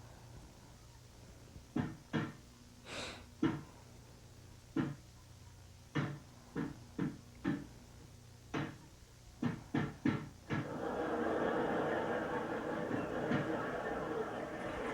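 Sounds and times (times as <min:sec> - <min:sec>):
steady loud din: 0:10.6 - 0:14.9.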